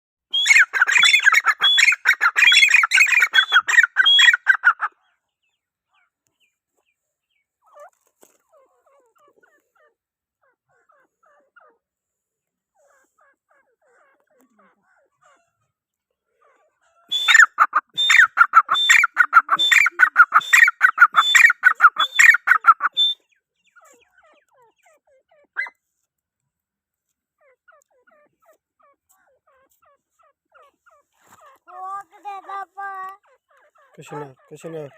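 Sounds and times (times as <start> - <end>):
francolin calling harshly: 0.3 - 4.9, 17.1 - 23.2.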